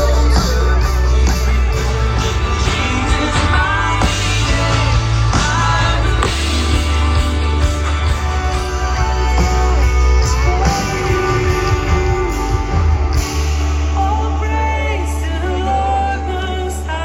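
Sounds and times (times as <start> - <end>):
guitar: 0.0 - 17.0
person singing: 0.0 - 17.0
steady bass line: 0.0 - 17.0.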